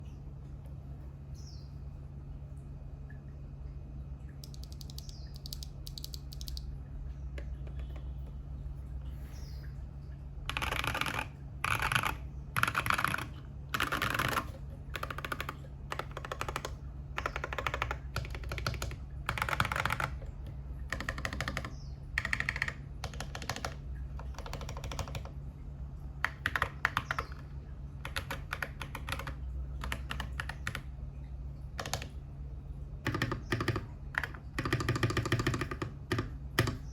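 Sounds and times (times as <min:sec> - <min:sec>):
mechanical keyboard typing: 0:04.4 - 0:06.7, 0:10.5 - 0:25.4, 0:26.2 - 0:30.9, 0:31.8 - 0:32.2, 0:33.0 - 0:36.9.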